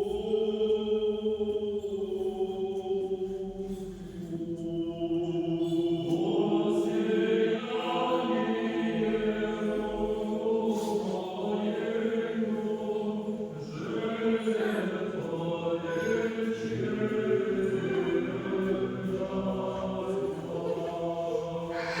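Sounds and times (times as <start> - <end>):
group of voices chanting: 10.7 - 22.0.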